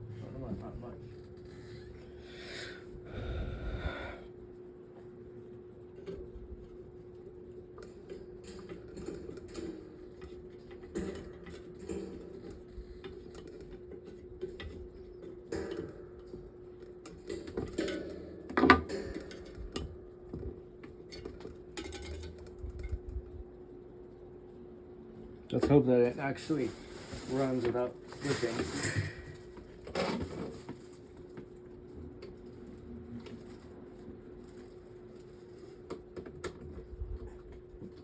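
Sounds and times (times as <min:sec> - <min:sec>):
steady hum: 0:00.0 - 0:29.6
small metal clicks and clatters: 0:20.9 - 0:23.0.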